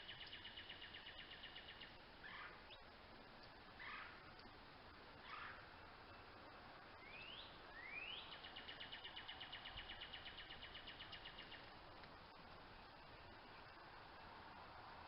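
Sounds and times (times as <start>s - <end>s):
bird singing trill: 0.0s - 4.5s, 5.2s - 11.8s.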